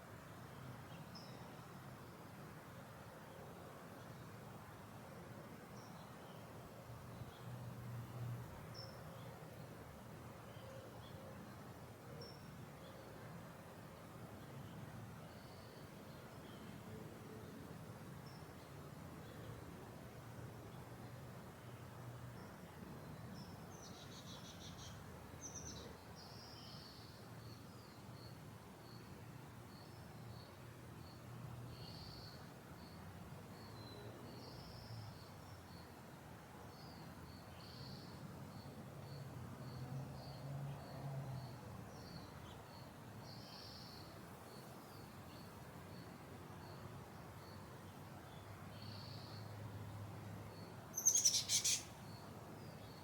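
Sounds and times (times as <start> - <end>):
small bird chirps and trill: 50.9 - 53.0.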